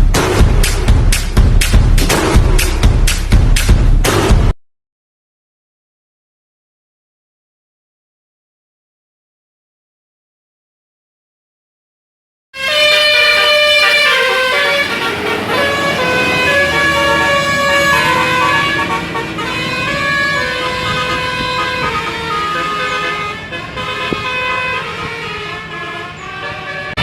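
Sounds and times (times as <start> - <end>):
multi-tone air horn melody: 12.6 - 27.0.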